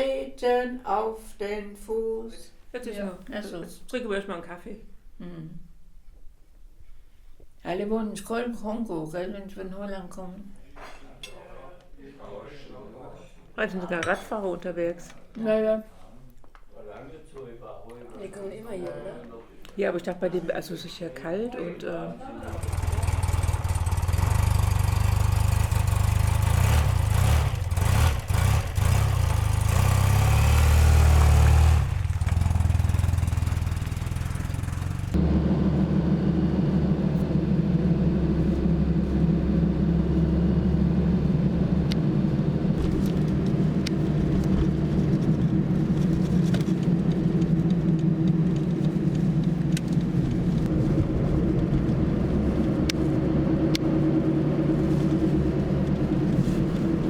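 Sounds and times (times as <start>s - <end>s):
vehicle engine rumbling: 22.4s - 57.0s.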